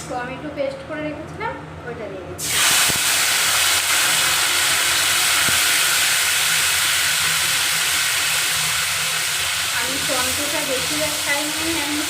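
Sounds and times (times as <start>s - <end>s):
paste sizzling in hot oil: 2.4s - 12.0s.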